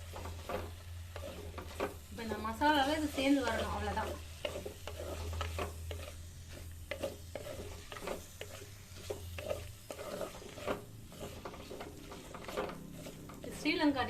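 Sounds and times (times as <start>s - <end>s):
light sizzling: 0.0s - 14.0s
utensil stirring and scraping pan: 0.0s - 14.0s.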